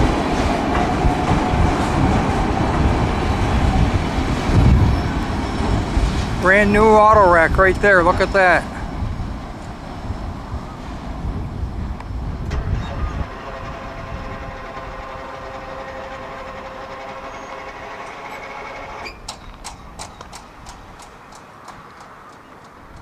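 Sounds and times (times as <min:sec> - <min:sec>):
train cars squealing: 0:00.0 - 0:21.0
freight train rumbling: 0:00.0 - 0:23.0
wheel clicks over rail joints: 0:12.4 - 0:23.0.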